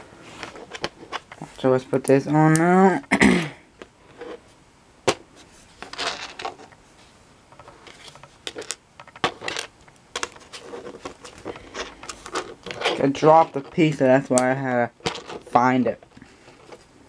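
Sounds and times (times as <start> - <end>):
plastic pieces rattling and rustling: 5.8 - 6.8, 7.5 - 16.8.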